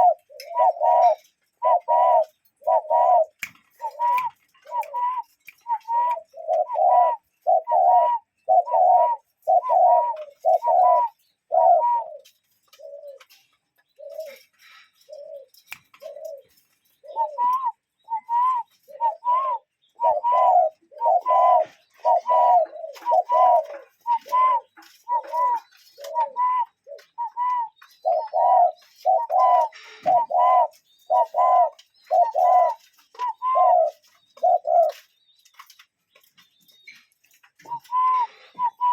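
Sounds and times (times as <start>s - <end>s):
cuckoo calling: 0.0s - 38.9s.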